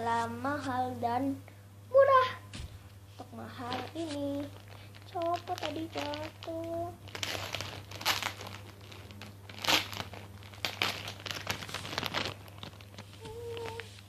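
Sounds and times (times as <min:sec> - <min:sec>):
squishy toys crinkling and rustling: 0:03.6 - 0:14.0.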